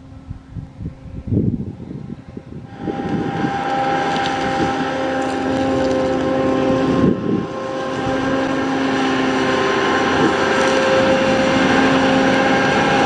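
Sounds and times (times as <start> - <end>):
diesel drone of farm machinery: 0.0 - 13.0
steady machine whine: 0.0 - 13.0.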